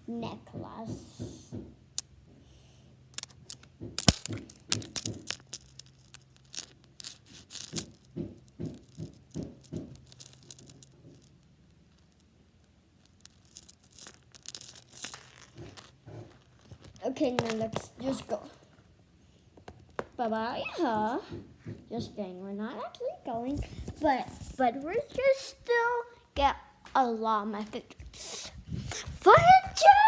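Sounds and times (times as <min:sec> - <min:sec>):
small hard objects clicking: 0:03.1 - 0:18.4.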